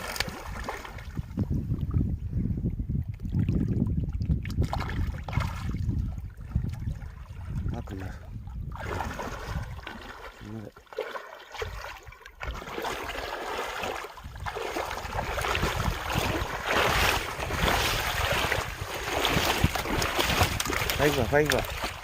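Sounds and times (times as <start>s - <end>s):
wind buffeting microphone: 0.0s - 10.7s, 11.5s - 22.0s
river water rushing: 14.6s - 22.0s.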